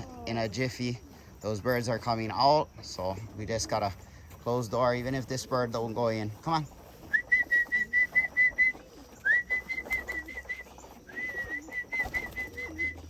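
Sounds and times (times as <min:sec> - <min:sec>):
person whistling: 0:07.1 - 0:13.0.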